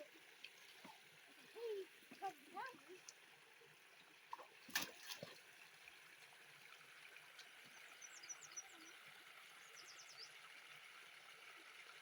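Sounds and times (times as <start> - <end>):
faint creek trickle: 0.0 - 12.0.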